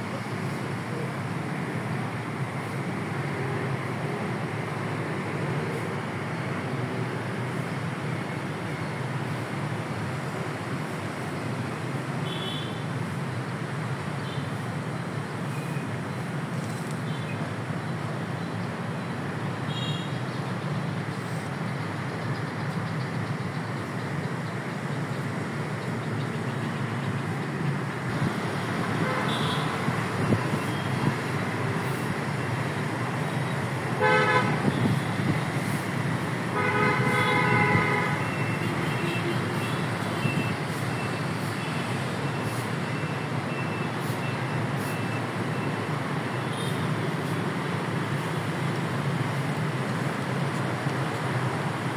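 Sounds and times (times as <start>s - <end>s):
background traffic noise: 0.0s - 51.9s
vehicle horn honking: 29.0s - 29.8s, 34.0s - 35.0s, 36.6s - 39.8s.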